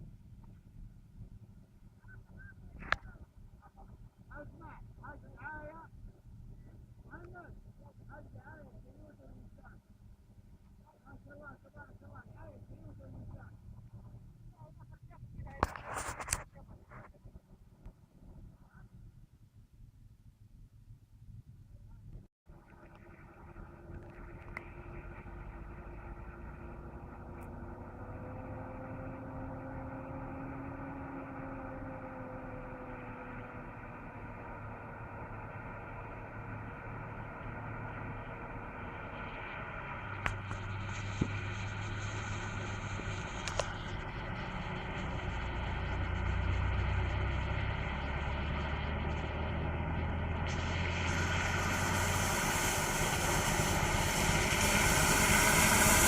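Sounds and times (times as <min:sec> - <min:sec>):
car engine running: 0:00.0 - 0:19.0, 0:22.5 - 0:56.0
rushing noise: 0:33.8 - 0:56.0.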